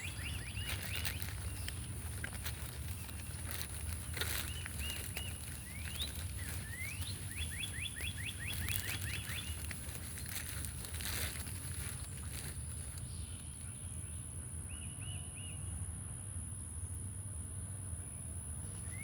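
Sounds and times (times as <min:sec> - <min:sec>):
steady low rumble: 0:00.0 - 0:12.8
songbird calling: 0:00.0 - 0:15.6.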